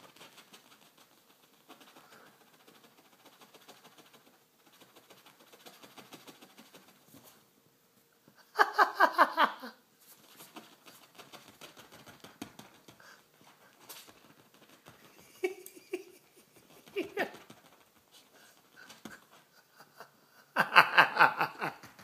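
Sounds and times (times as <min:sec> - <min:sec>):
dog leg scratching upholstery: 0:10.1 - 0:13.0.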